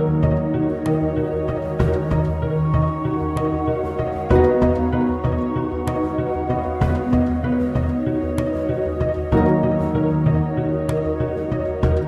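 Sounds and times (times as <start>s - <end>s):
soft new-age music: 0.0s - 12.0s.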